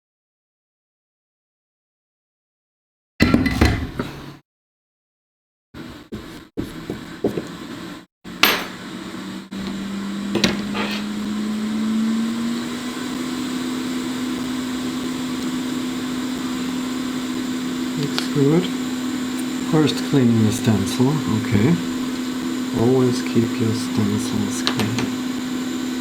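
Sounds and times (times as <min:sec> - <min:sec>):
hot air blower humming: 0:06.9 - 0:26.0.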